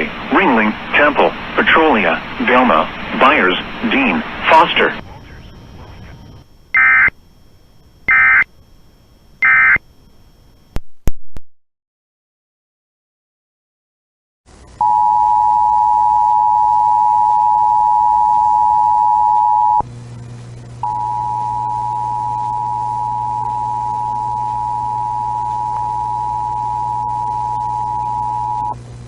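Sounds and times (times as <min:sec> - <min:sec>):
low hum: 0:14.5 - 0:29.0.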